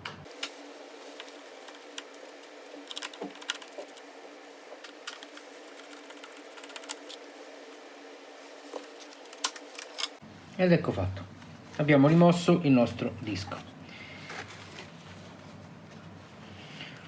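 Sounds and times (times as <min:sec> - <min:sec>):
faint steady hum: 0:00.0 - 0:17.0
hard drive being handled: 0:00.3 - 0:07.4, 0:08.5 - 0:10.2.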